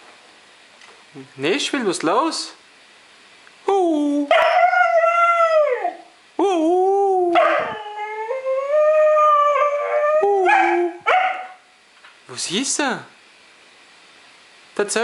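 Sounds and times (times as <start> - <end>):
husky howling: 4.3 - 6.1, 7.3 - 11.6.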